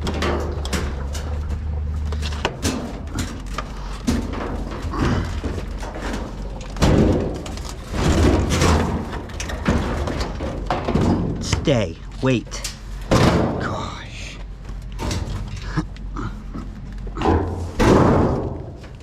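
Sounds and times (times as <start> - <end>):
scrap thumping and clattering: 0.0 - 13.8, 14.5 - 19.0
low steady hum: 0.0 - 19.0.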